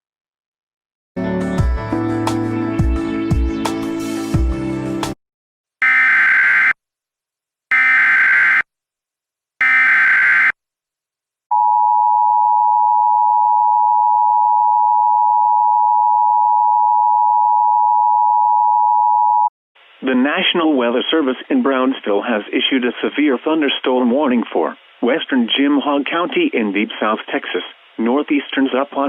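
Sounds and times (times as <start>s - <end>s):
music: 1.2s - 5.2s
harsh warbling digital data bursts: 7.7s - 8.6s, 9.6s - 10.6s.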